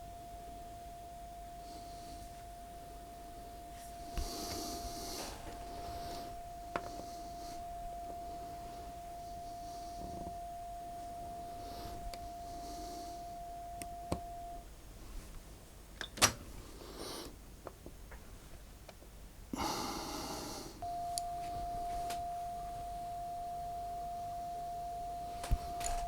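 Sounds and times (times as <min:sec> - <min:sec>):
steady test tone: 0:00.0 - 0:14.7, 0:20.8 - 0:26.0.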